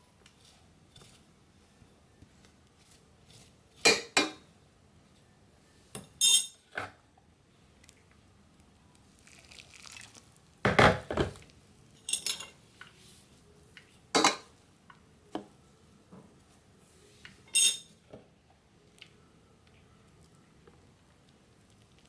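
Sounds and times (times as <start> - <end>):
pot and utensils clattering: 3.8 - 4.4, 6.0 - 6.9, 12.0 - 12.6, 14.1 - 14.5, 17.5 - 17.9.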